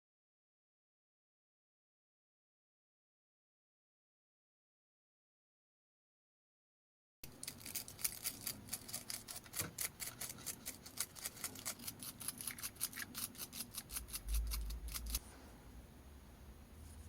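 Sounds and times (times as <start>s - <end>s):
metal brush scrubbing contacts: 7.3s - 15.4s.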